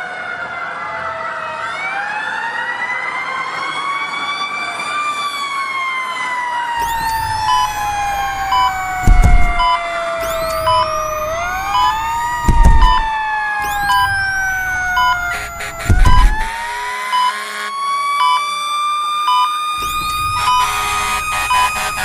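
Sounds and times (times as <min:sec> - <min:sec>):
siren wailing: 0:01.8 - 0:22.0
short beeps: 0:06.8 - 0:17.3, 0:19.3 - 0:22.0.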